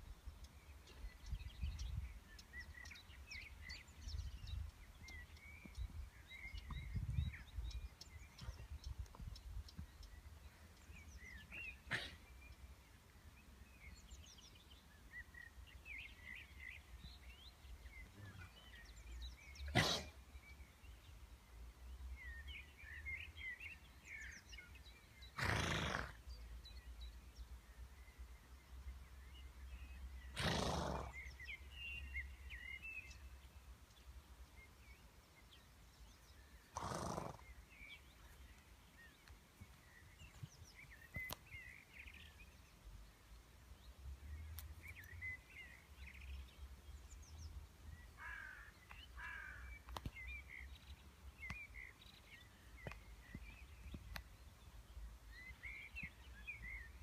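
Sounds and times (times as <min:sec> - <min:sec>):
horse snorting: 0:25.4 - 0:26.2, 0:30.3 - 0:31.3, 0:36.7 - 0:37.5.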